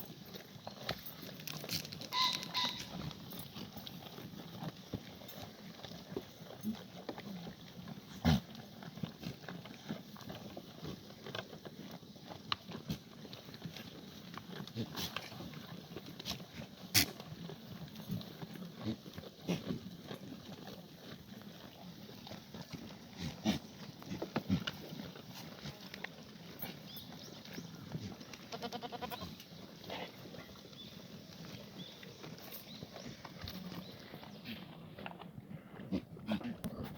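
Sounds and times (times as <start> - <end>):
hooves clicking and knocking: 0.0 - 36.9
goat bleating: 2.1 - 3.0, 28.4 - 30.1.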